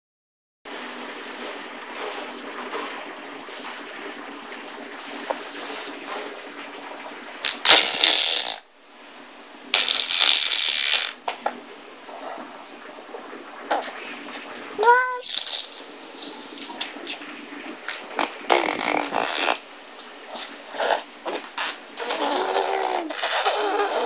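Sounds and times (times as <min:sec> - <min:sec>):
hissy mouth noises: 0:07.4 - 0:08.7, 0:09.7 - 0:11.2, 0:14.8 - 0:17.2, 0:17.9 - 0:19.6, 0:20.4 - 0:24.0.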